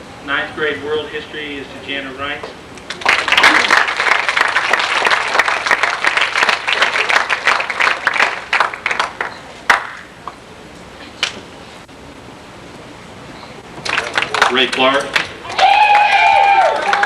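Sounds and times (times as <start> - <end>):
audience applauding: 2.9 - 10.0, 13.8 - 17.0.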